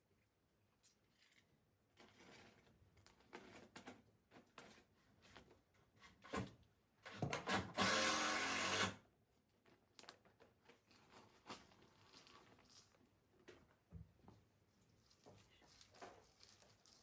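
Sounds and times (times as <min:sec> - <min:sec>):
electric drill running: 0:07.8 - 0:08.9.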